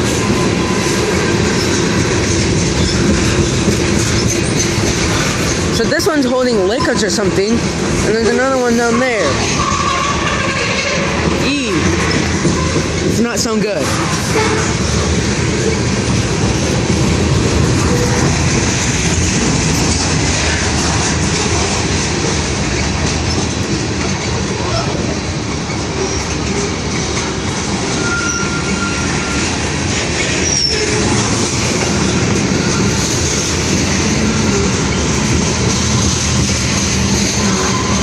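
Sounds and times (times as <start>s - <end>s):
train wheels rumbling on rail: 0.0s - 38.0s
train wheel squeals: 8.7s - 13.0s, 25.6s - 26.8s, 27.9s - 35.1s, 36.8s - 38.0s.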